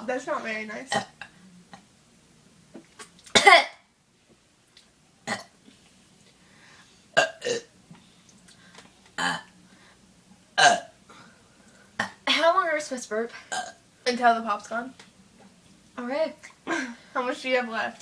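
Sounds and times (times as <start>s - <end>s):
people burping: 7.2s - 7.7s, 10.6s - 10.9s.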